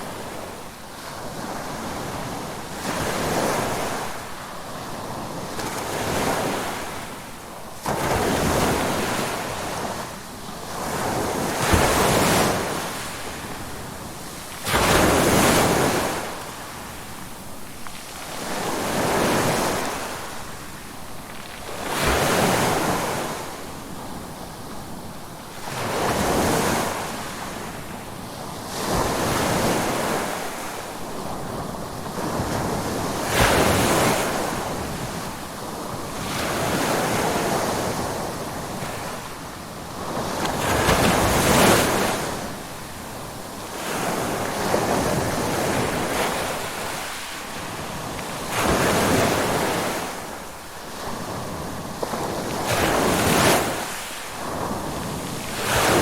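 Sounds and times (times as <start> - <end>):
ocean waves breaking: 28.6 - 56.0.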